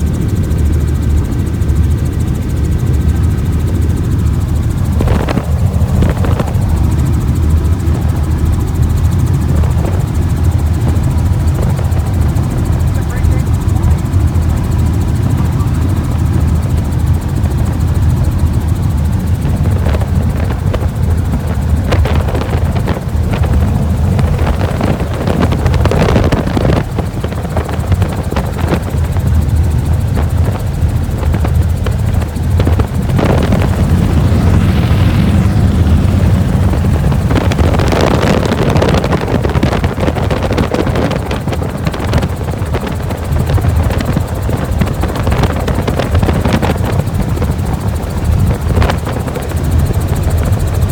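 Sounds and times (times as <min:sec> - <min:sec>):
helicopter rotor and engine: 0:00.0 - 0:50.9.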